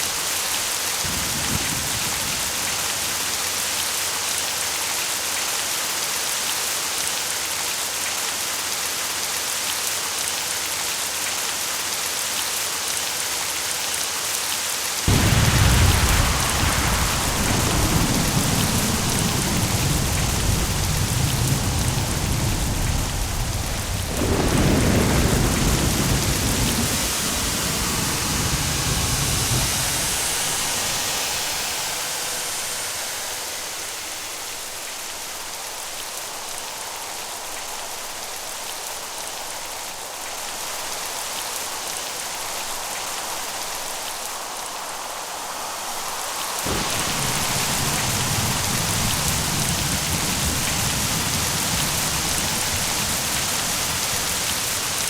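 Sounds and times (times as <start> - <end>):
heavy rain: 0.0 - 55.0
thunder rumbling: 0.6 - 3.8, 15.1 - 35.0, 46.7 - 55.0.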